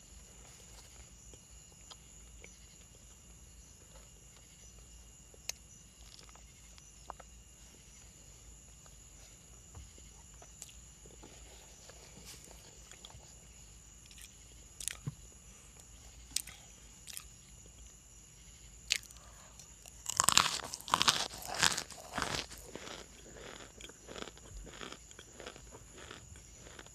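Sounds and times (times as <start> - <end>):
chewing clicks: 14.1 - 15.0, 18.9 - 26.9
person crunching crisp food: 14.1 - 15.0, 16.4 - 17.3, 18.9 - 26.9.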